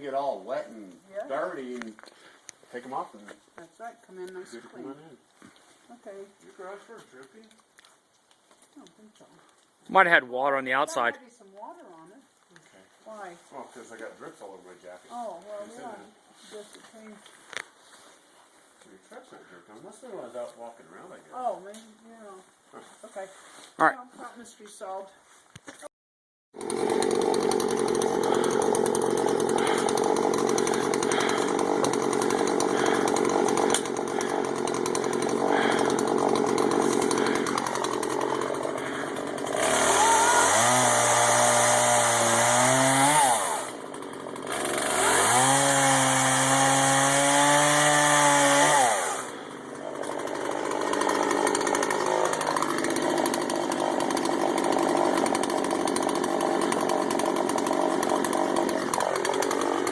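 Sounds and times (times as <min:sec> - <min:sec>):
chainsaw idling and revving: 0:26.6 - 0:59.9.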